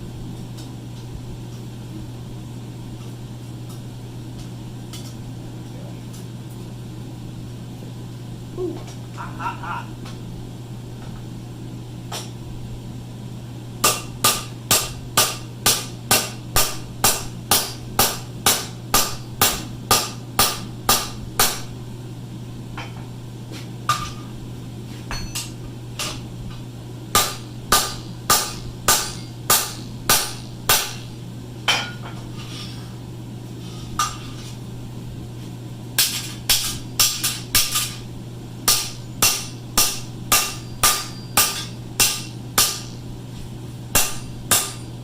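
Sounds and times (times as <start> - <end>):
hammer striking hot steel: 13.8 - 21.8, 23.9 - 24.3, 25.1 - 26.2, 27.1 - 32.8, 34.0 - 34.4, 36.0 - 43.0, 43.9 - 45.0.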